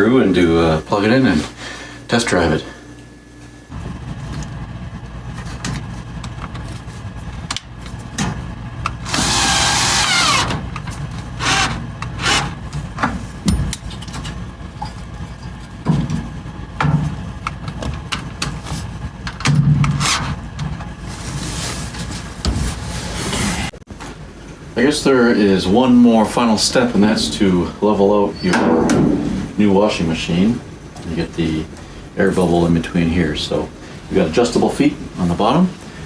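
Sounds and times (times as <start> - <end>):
power drill whining: 9.0 - 10.6, 11.4 - 12.5
steady low hum: 24.1 - 36.0.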